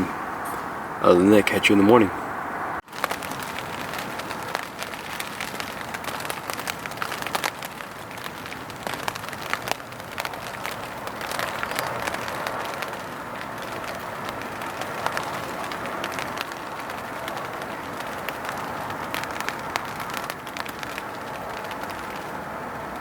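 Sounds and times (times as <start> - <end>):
rain tapping on fabric: 2.8 - 23.0
wind and rain on a tent: 2.8 - 23.0.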